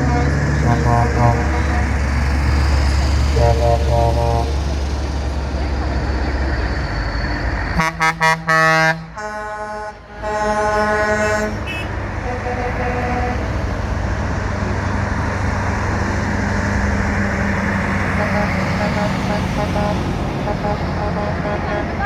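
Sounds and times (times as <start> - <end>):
truck air horns: 0.0 - 5.0, 7.8 - 13.8, 17.8 - 22.0
passing traffic rumble: 0.0 - 22.0.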